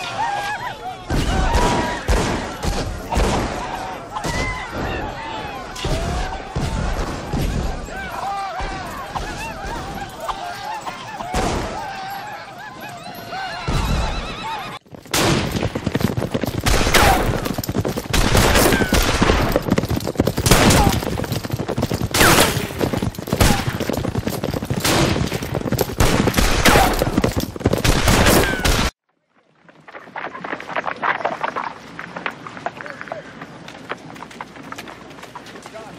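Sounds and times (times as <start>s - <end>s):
battle sounds: 0.0s - 15.9s, 16.5s - 29.0s
horses galloping: 0.0s - 35.9s
horses whinnying: 7.2s - 14.8s, 16.6s - 28.9s
rapid gunshots: 15.1s - 21.3s, 22.0s - 24.0s, 24.7s - 28.9s.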